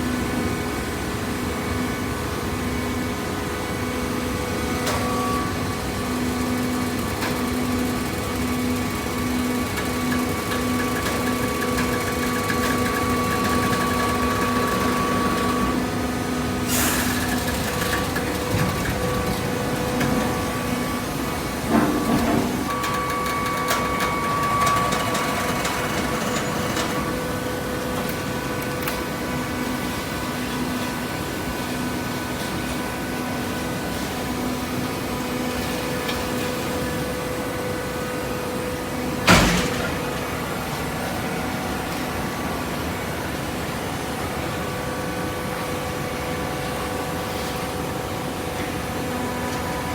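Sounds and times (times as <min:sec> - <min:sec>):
baling machine humming: 0:03.7 - 0:30.5.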